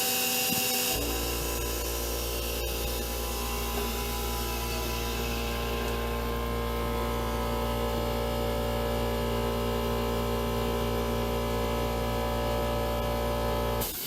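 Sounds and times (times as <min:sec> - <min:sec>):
milling machine humming: 0:00.0 - 0:13.9.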